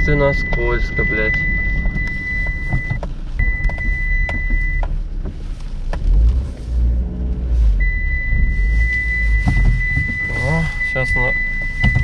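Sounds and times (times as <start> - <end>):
high-pitched beep: 0.0 - 4.8, 7.8 - 12.0
car engine rumbling: 0.0 - 12.0.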